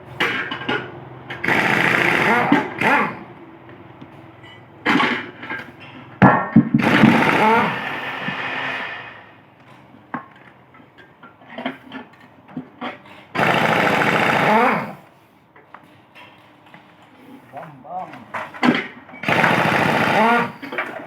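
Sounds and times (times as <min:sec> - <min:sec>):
power tool running: 0:01.3 - 0:03.4, 0:06.8 - 0:09.5, 0:13.4 - 0:15.2, 0:19.2 - 0:21.0.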